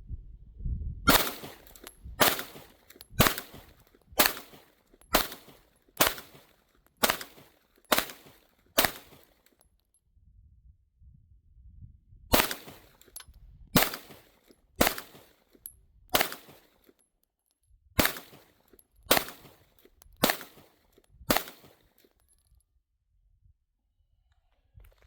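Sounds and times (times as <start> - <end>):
pistol shots: 1.1 - 9.4, 12.3 - 13.2, 13.8 - 15.4, 16.1 - 16.7, 18.0 - 21.9.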